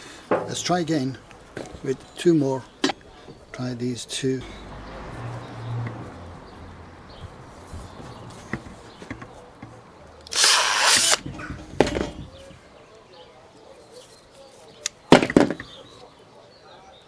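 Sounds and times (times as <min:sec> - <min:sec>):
sharp knock: 0:00.3 - 0:00.7
power drill spinning: 0:10.3 - 0:11.2.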